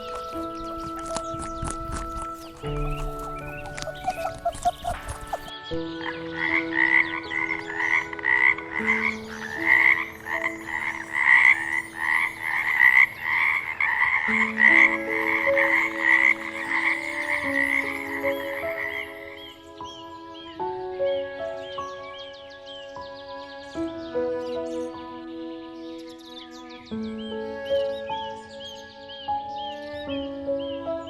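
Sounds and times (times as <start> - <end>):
music with long held notes: 0.0 - 31.0
frog croaking: 6.4 - 19.5.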